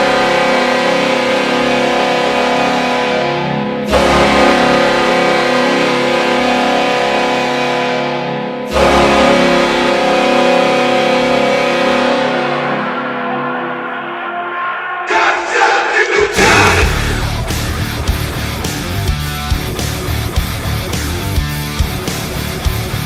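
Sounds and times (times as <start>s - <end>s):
goal horn blasts: 0.0s - 14.7s.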